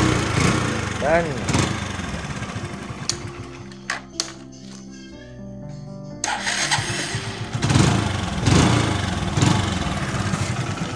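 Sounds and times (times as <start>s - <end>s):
motorcycle engine revving: 0.0s - 3.8s, 6.2s - 10.9s
background music: 0.0s - 10.9s.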